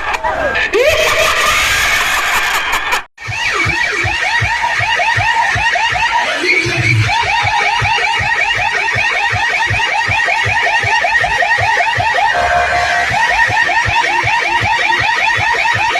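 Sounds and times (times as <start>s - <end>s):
steady bass beat: 3.2s - 15.9s
warbling electronic alarm tone: 3.2s - 15.9s.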